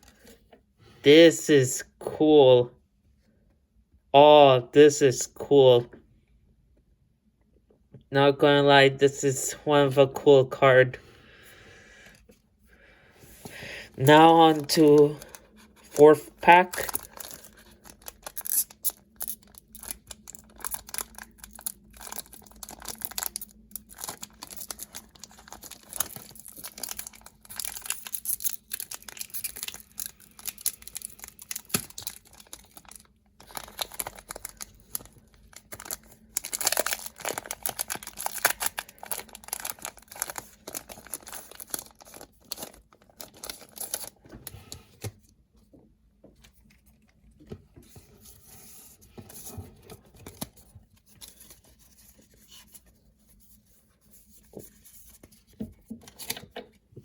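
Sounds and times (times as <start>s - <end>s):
foil wrapper ripping and crinkling: 14.5s - 44.2s.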